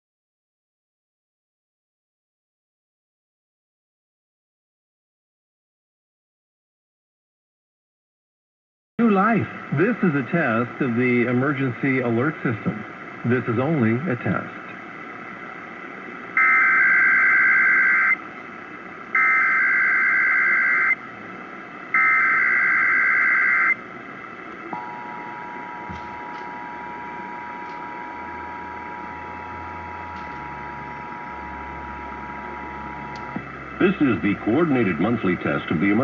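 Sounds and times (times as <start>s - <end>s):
radio hiss: 9.0s - 36.0s
screeching data tone bursts: 16.4s - 18.2s, 19.2s - 21.0s, 22.0s - 23.8s.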